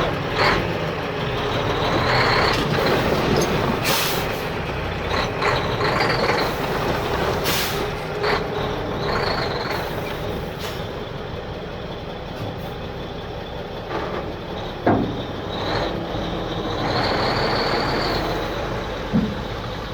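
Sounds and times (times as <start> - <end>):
diesel truck engine running: 0.0 - 19.9
air brake hissing: 3.8 - 4.6, 7.4 - 8.0, 9.9 - 11.0.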